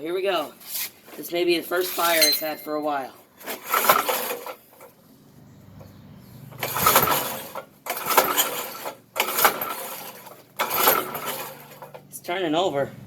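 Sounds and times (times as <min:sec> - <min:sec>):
engine cranking without catching: 0:03.4 - 0:13.0.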